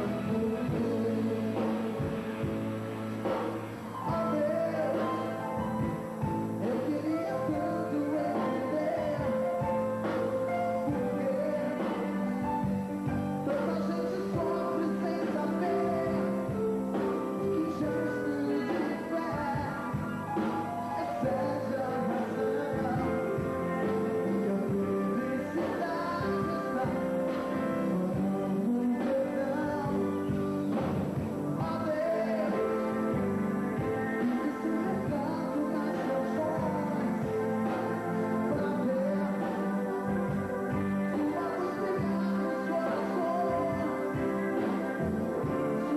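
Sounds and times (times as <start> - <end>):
live pop-rock band: 0.0 - 45.9
person singing: 0.0 - 45.9.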